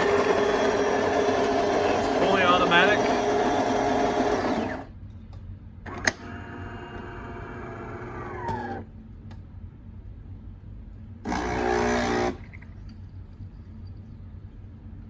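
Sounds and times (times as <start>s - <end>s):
coffee grinder running: 0.0s - 4.9s, 6.3s - 8.8s, 11.3s - 12.4s
small motor whirring: 0.0s - 4.9s, 6.0s - 8.9s.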